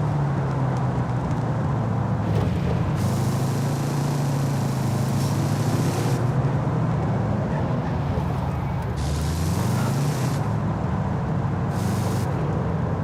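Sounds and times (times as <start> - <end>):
car engine idling: 2.2 - 10.7
hiss: 3.0 - 6.3, 11.7 - 12.4.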